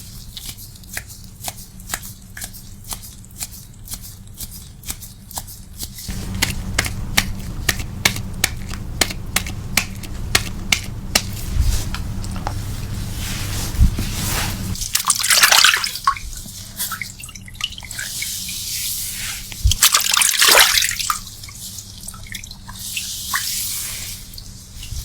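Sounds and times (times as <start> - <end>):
water splashing over hair: 14.7 - 24.6.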